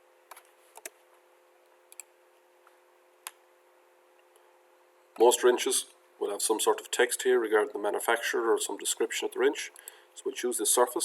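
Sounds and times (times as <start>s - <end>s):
faint steady hum: 0.0s - 11.0s
computer mouse clicks: 0.3s - 1.0s, 1.9s - 2.1s.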